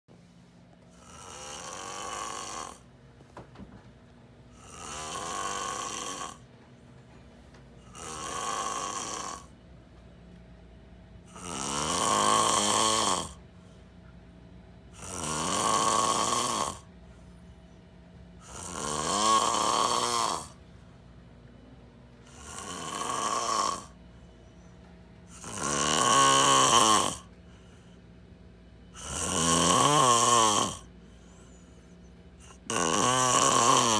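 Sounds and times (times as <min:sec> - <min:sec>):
person snoring loudly: 0:00.9 - 0:02.9, 0:04.5 - 0:06.4, 0:07.8 - 0:09.5, 0:11.3 - 0:13.4, 0:15.0 - 0:16.9, 0:18.4 - 0:20.6, 0:22.2 - 0:24.0, 0:25.3 - 0:27.3, 0:29.0 - 0:30.9, 0:32.4 - 0:33.9.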